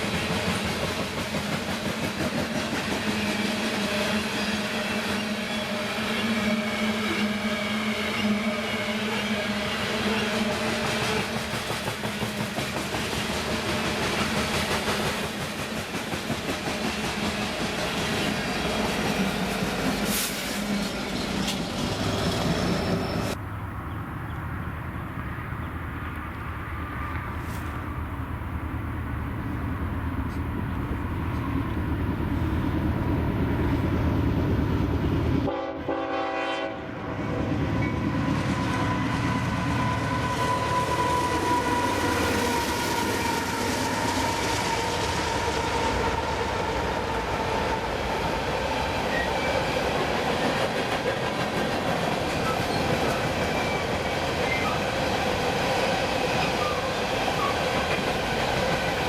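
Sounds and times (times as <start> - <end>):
rail cars rolling on track: 0.0 - 59.0
locomotive rumble: 16.5 - 35.5.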